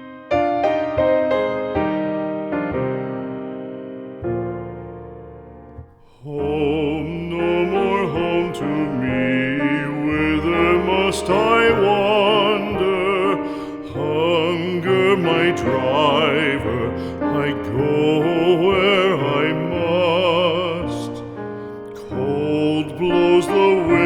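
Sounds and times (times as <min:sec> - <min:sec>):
soft piano: 0:00.0 - 0:24.0
person singing with vibrato: 0:06.0 - 0:24.0.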